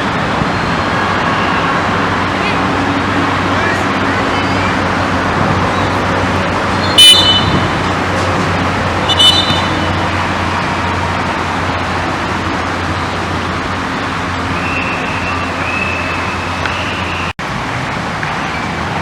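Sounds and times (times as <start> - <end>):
outdoor background noise: 0.0 - 19.0
shrill whistle blasts: 6.8 - 7.7, 14.6 - 17.3.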